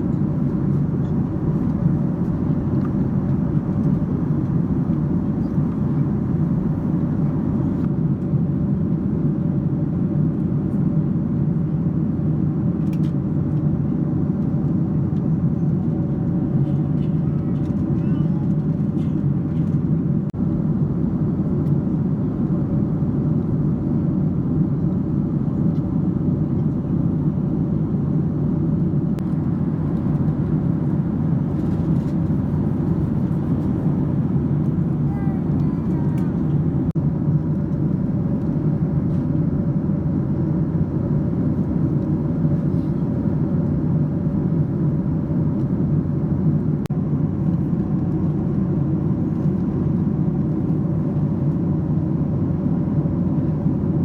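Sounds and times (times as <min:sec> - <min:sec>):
faint hum: 0:00.0 - 0:07.9, 0:29.0 - 0:46.9
airliner cabin engine rumble: 0:00.0 - 0:54.0.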